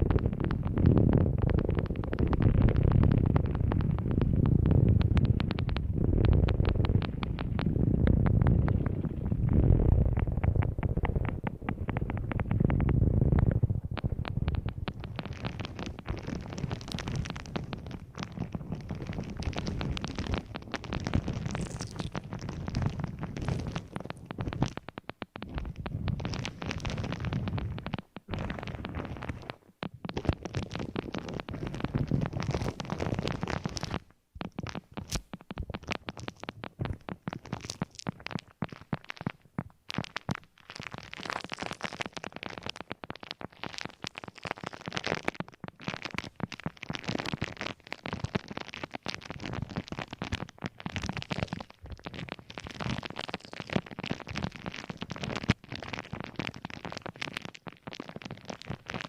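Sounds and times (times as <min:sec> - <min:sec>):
crackling and scratching object: 0:00.0 - 0:59.0
low rumble: 0:02.6 - 0:15.3.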